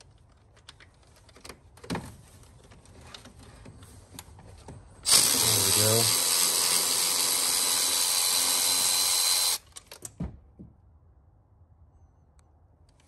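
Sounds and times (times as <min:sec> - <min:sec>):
power drill whining: 0:05.1 - 0:09.7.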